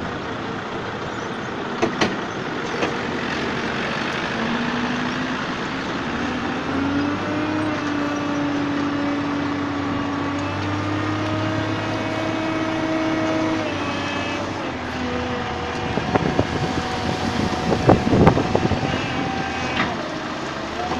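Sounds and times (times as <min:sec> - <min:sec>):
heavy diesel machinery droning: 0:00.0 - 0:20.9
knocks and clatter: 0:01.8 - 0:03.0.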